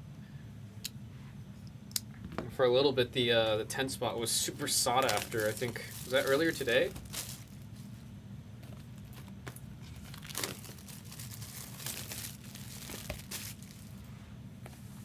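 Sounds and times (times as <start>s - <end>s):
steady low hum: 0.0s - 15.0s
foil wrappers crinkling: 4.4s - 8.1s, 8.7s - 14.1s.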